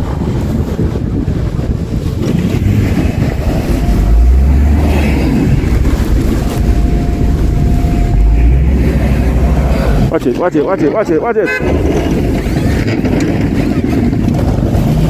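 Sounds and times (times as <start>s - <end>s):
car engine rumbling: 0.0s - 15.0s
wind buffeting microphone: 0.0s - 15.0s
thin steady whine: 3.0s - 12.4s.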